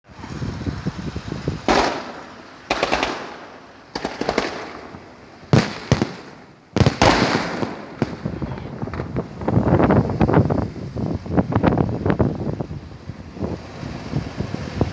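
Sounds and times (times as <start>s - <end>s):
fireworks bangs: 1.6s - 10.4s.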